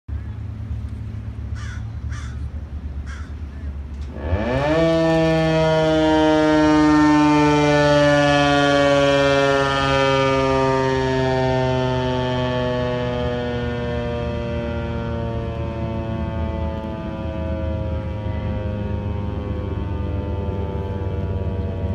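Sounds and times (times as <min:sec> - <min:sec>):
low background rumble: 0:00.1 - 0:04.2
warning siren low growl: 0:00.4 - 0:21.9.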